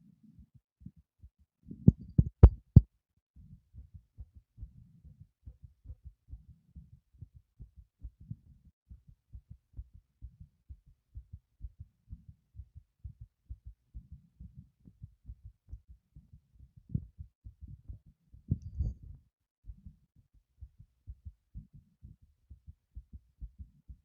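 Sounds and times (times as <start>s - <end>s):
heartbeat thuds: 1.7s - 24.0s.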